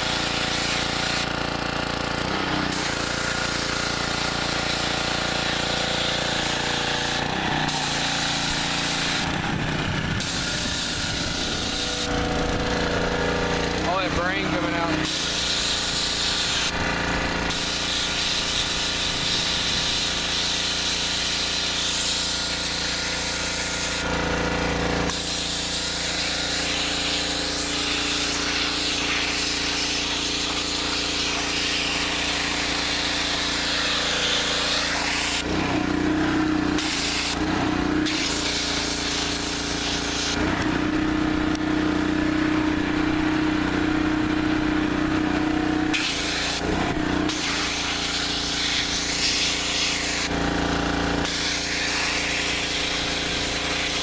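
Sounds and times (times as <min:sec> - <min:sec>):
pressure washer jet hissing: 0:00.0 - 0:54.0
machine humming: 0:01.3 - 0:54.0.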